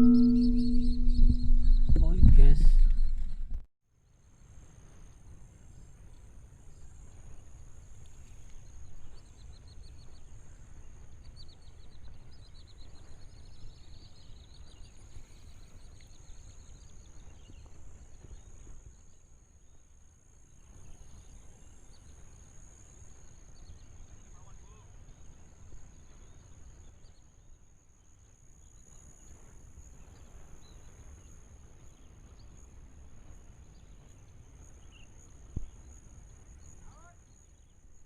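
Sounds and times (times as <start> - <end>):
low rumble: 0.0 - 3.6.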